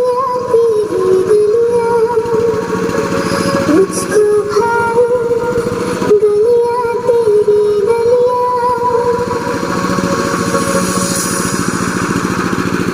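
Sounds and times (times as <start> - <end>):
vehicle engine running: 0.0 - 12.9
loud music through sound system: 8.6 - 12.9.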